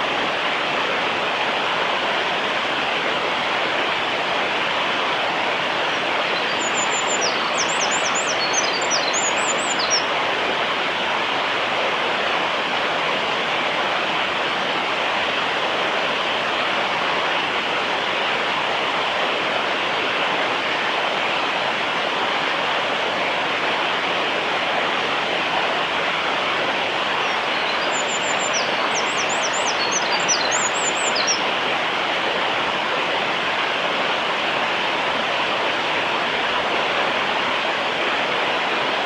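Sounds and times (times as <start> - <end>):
running water rushing: 0.0 - 39.0
wren singing: 6.4 - 10.1, 27.2 - 31.4.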